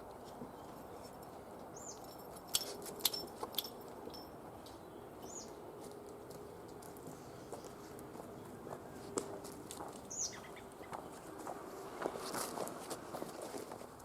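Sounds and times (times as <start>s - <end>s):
high bird chirps: 10.1s - 10.6s.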